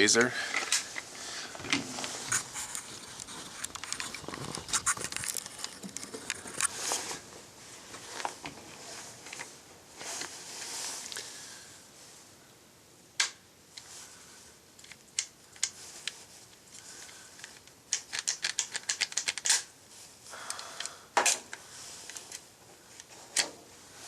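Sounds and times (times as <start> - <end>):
pistol handling clicks and rustling: 14.8 - 19.7.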